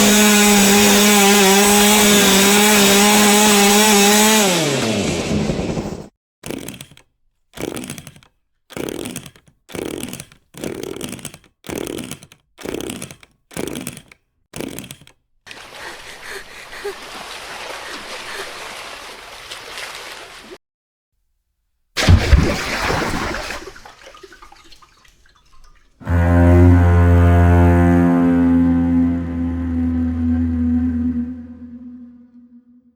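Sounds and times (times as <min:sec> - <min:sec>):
chainsaw bursts: 0:00.0 - 0:07.0, 0:07.6 - 0:17.0.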